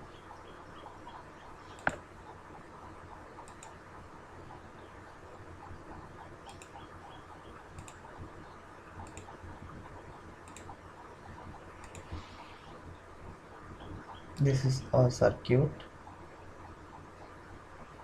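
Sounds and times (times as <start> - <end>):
low steady hum: 0.0 - 18.0
computer mouse clicking: 1.7 - 2.0, 3.4 - 3.8, 6.4 - 6.8, 7.7 - 8.2, 9.0 - 10.8, 11.8 - 12.6.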